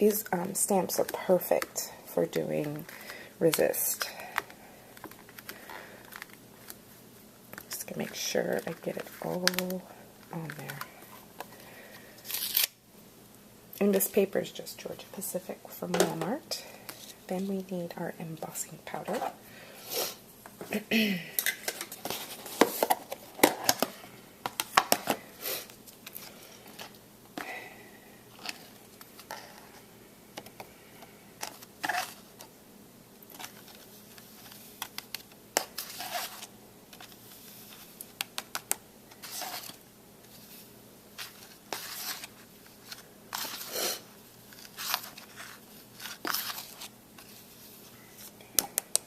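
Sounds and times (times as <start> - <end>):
paper crinkling and rustling: 44.4 - 48.4.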